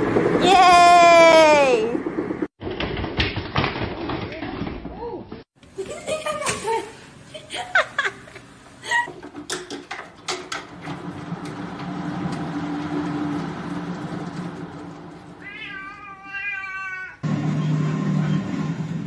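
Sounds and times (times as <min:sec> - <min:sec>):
cat yowling: 0:15.4 - 0:17.2.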